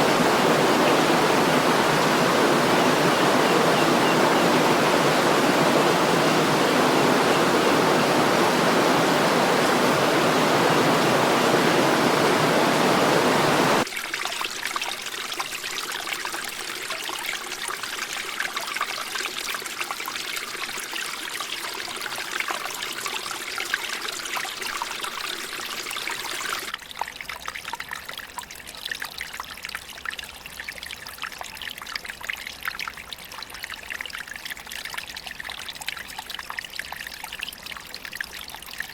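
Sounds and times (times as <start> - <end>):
waterfall rushing: 0.0 - 13.8.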